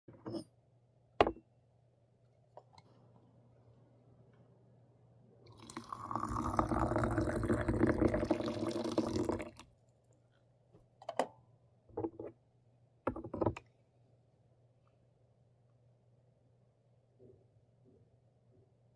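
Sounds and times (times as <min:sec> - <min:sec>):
water pouring into a cup: 0:05.5 - 0:09.6.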